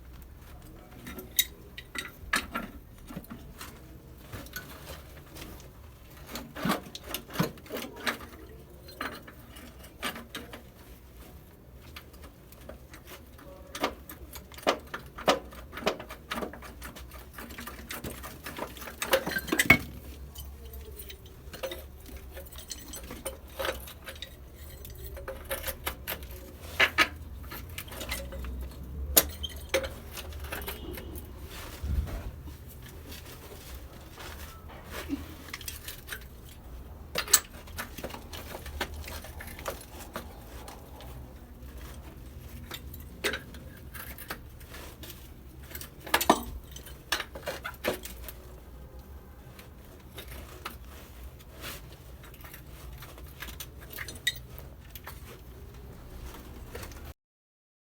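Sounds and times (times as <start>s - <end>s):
metal tools clinking: 0.5s - 57.1s.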